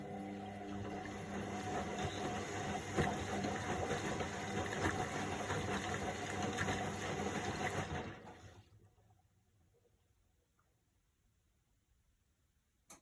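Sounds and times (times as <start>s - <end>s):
washing machine running: 0.0s - 9.0s.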